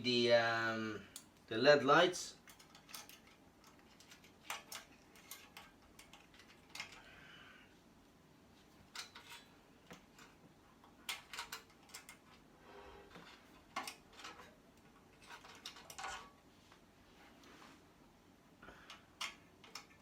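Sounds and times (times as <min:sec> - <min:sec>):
small parts being handled: 0:02.4 - 0:07.1, 0:08.6 - 0:16.9, 0:18.8 - 0:20.0.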